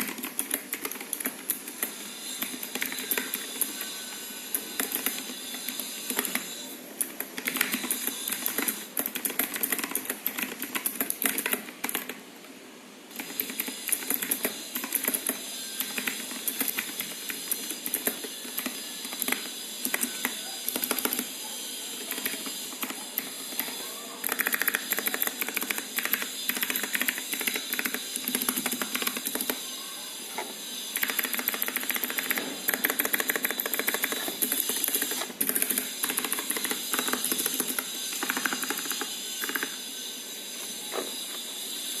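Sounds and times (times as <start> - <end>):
mechanical keyboard typing: 0.0 - 3.9, 4.6 - 6.4, 7.0 - 12.2, 13.1 - 21.3, 22.0 - 29.6, 31.0 - 39.7.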